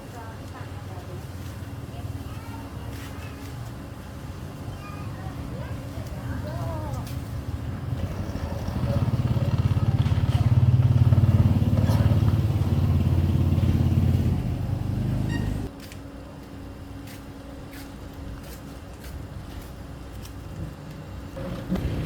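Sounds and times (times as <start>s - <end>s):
small petrol engine running: 7.9s - 15.7s, 21.4s - 22.0s.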